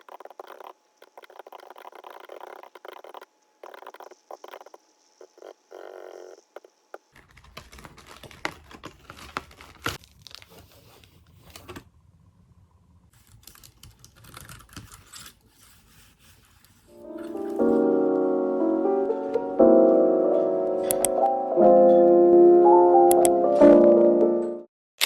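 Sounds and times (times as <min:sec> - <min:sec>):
keyboard typing: 0:00.0 - 0:08.8, 0:20.7 - 0:21.2.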